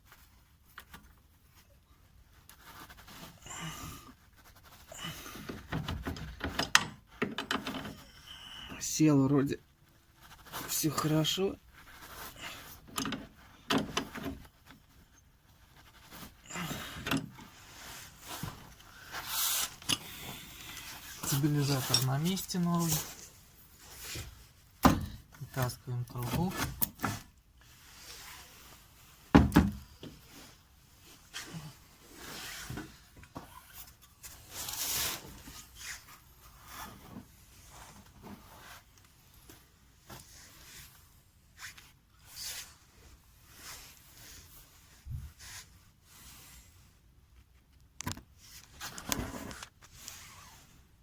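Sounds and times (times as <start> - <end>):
tools clanking and scraping: 19.6 - 23.3.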